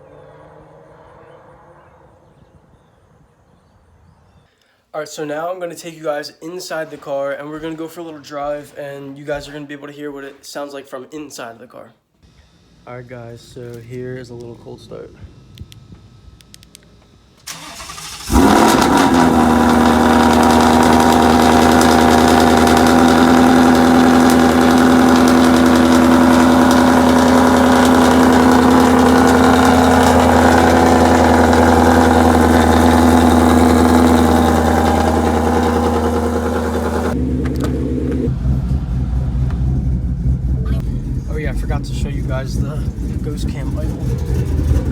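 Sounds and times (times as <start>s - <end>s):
starter cranking: 17.4s - 38.3s
car engine idling: 17.4s - 44.9s.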